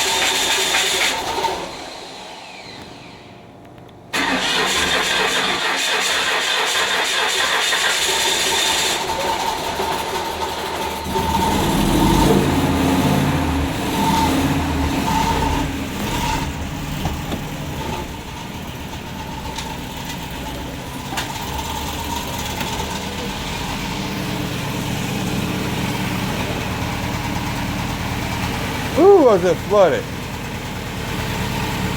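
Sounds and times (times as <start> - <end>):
engine running unevenly: 6.5 - 31.9.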